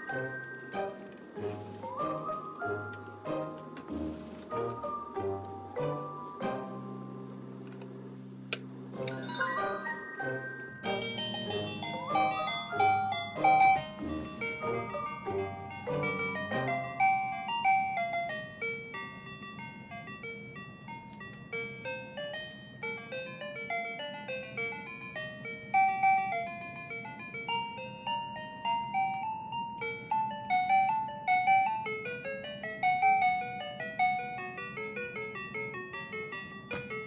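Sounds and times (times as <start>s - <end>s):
electronic beeping melody: 9.0s - 18.4s.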